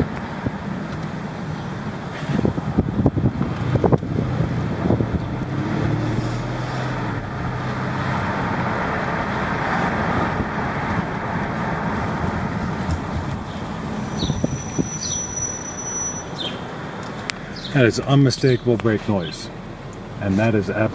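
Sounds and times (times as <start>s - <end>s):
road and tyre noise in car cabin: 0.0s - 20.9s.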